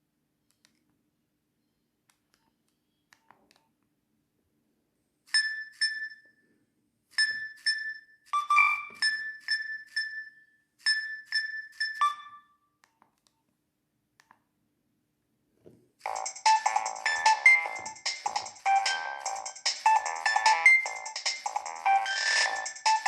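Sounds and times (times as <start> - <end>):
electronic ringtone melody: 7.2 - 12.6, 16.0 - 23.0.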